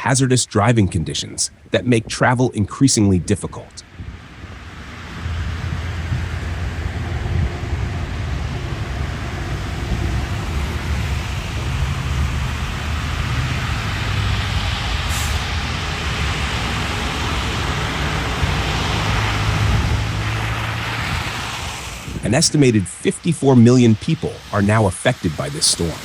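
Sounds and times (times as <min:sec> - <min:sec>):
steady rushing noise: 0:00.0 - 0:26.0
heavy vehicle engine running: 0:03.8 - 0:26.0.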